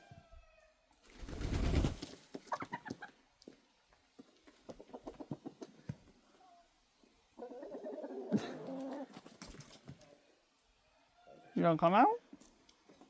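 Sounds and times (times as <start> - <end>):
chickens clucking: 2.4 - 3.4, 4.3 - 6.1, 7.0 - 9.4.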